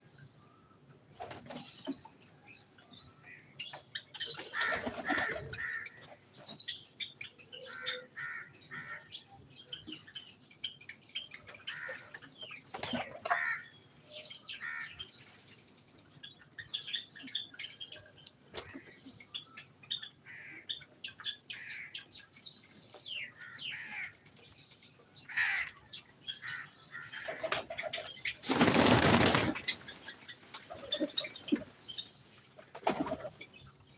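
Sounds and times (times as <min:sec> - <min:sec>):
birds chirping: 0:00.0 - 0:33.9.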